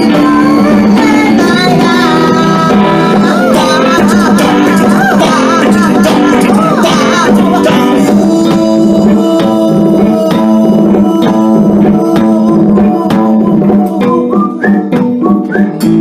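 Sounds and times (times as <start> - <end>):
drums and cymbals: 0.0 - 16.0
electric guitar chords: 0.0 - 16.0
person singing with vibrato: 0.0 - 16.0.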